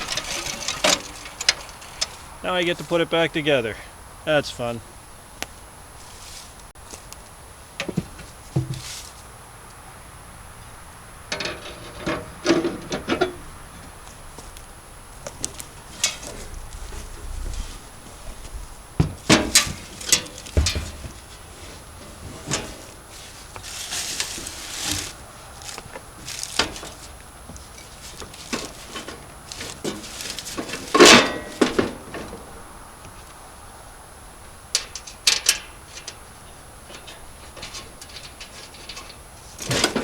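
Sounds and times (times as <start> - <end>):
metal parts clanking: 0.0 - 2.4, 11.3 - 13.6, 19.1 - 21.4, 26.2 - 32.6, 34.7 - 40.0
rustle: 0.0 - 40.0.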